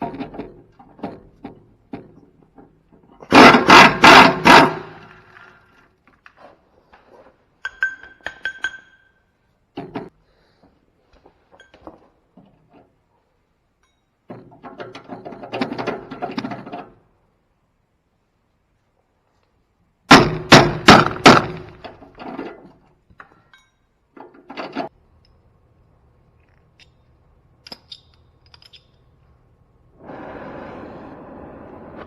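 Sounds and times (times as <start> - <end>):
ringing metallic clinks: 13.8 - 14.1, 23.4 - 24.0
metal parts rattling and scraping: 21.1 - 25.0.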